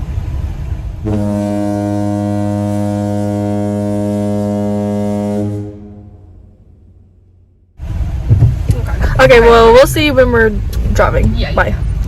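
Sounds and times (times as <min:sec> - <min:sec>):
low horn-like tone: 0:01.0 - 0:07.3.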